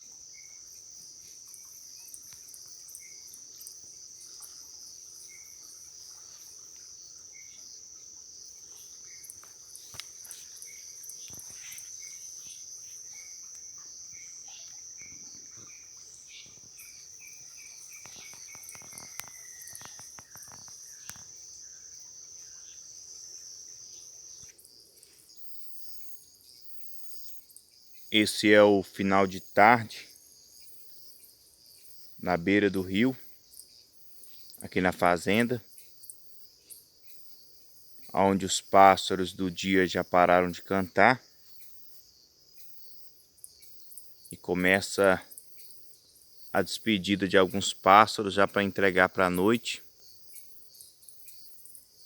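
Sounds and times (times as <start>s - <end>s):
crickets trilling: 0.0s - 52.0s
downward sliding insect call: 0.0s - 52.0s
short insect chirp: 0.0s - 52.0s.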